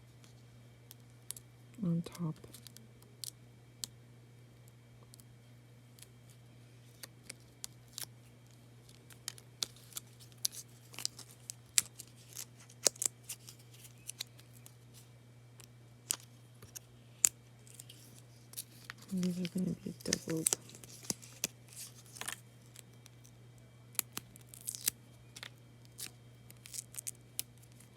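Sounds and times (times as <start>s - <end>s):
steady low hum: 0.0s - 27.9s
paper crafting clicks and ticks: 18.9s - 22.4s.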